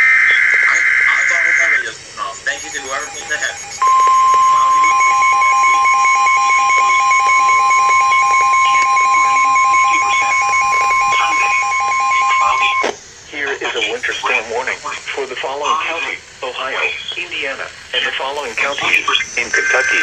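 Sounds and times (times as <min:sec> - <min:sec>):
loud steady alarm tone: 0:00.0 - 0:13.0, 0:18.6 - 0:20.0.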